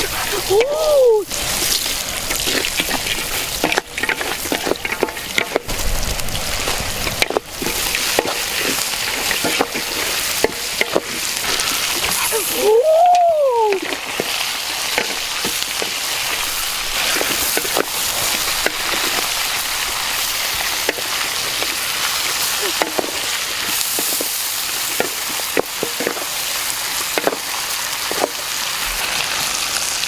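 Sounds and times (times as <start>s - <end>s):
food sizzling in a pan: 0.0s - 30.0s.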